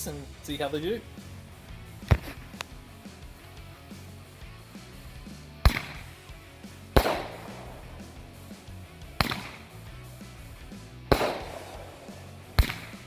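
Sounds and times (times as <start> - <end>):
crackling echoing tail: 1.1 - 13.0
roman candle bangs: 7.0 - 8.2, 11.1 - 13.0.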